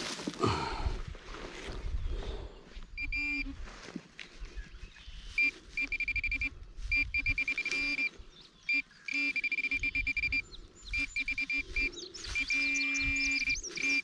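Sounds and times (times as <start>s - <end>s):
soil scraping and thuds: 0.0s - 2.0s
pinpointer beeping: 3.0s - 3.6s, 5.4s - 8.1s, 8.7s - 14.0s.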